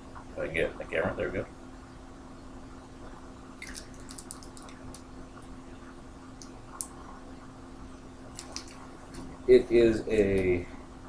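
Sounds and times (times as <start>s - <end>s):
faint steady hum: 0.0s - 11.0s.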